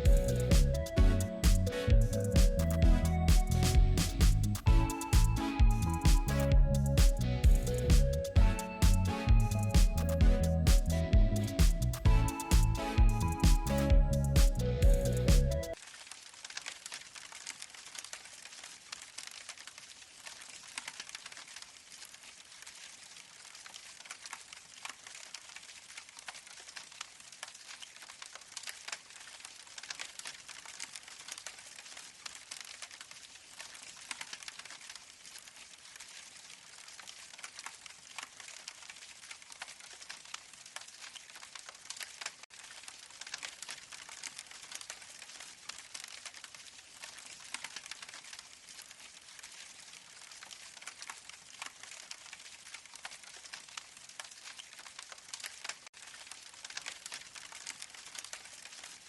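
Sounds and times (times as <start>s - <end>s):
campfire crackling from small speaker: 0.0s - 59.0s.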